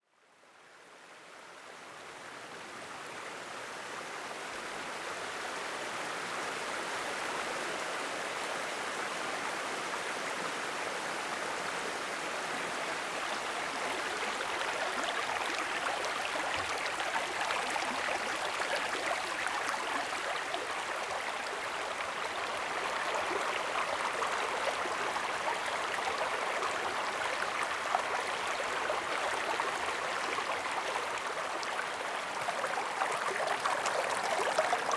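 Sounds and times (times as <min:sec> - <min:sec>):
stream running over rocks: 0:11.6 - 0:34.9.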